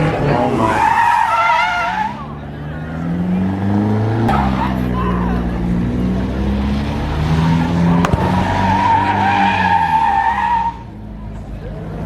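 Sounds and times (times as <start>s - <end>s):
car engine running hard: 0.0s - 12.0s
tire squeal: 0.3s - 3.3s, 7.4s - 11.0s.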